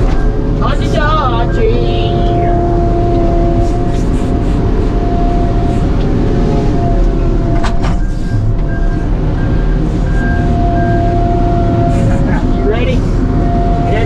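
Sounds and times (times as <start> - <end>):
steady high tone: 0.1 - 14.0
short beeps: 1.0 - 3.2.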